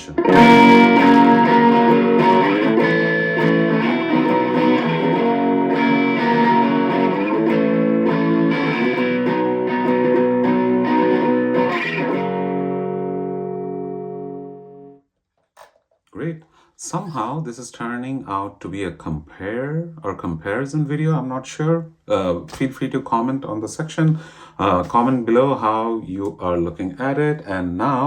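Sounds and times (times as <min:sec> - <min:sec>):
electric guitar strummed chords: 0:00.0 - 0:15.0.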